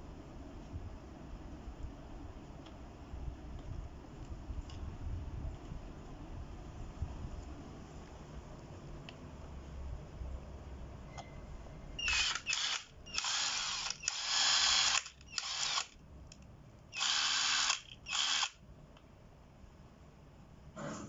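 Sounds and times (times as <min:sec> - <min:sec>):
impact wrench bursts: 0:12.0 - 0:16.0, 0:17.0 - 0:18.6.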